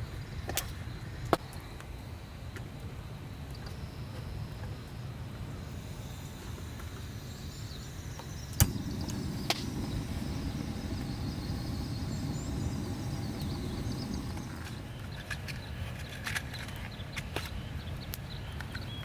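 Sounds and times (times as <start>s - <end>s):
low outdoor rumble: 3.7s - 15.9s
sharp clicks: 8.1s - 17.5s.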